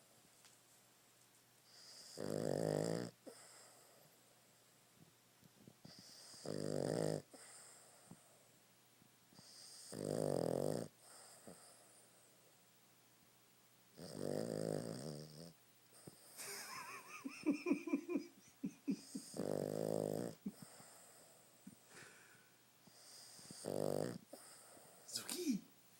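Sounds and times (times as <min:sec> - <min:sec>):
pet snoring: 0:01.7 - 0:04.3, 0:05.8 - 0:08.4, 0:09.3 - 0:12.2, 0:14.0 - 0:16.4, 0:18.9 - 0:21.4, 0:22.8 - 0:25.1.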